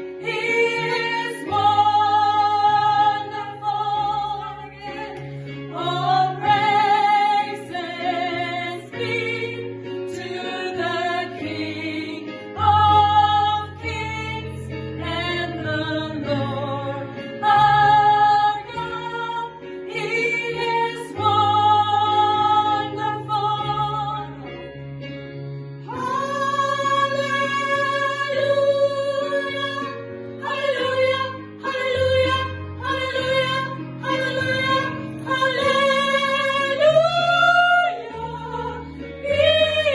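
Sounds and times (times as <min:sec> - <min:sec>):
gospel choir singing: 0:00.0 - 0:24.7, 0:25.8 - 0:39.9.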